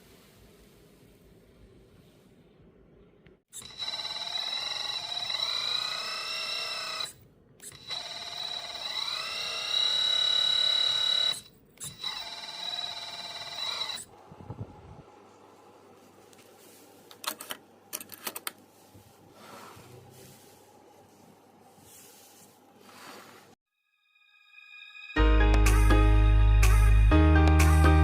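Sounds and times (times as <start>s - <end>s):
hydraulic pump motor whining: 3.6s - 14.1s.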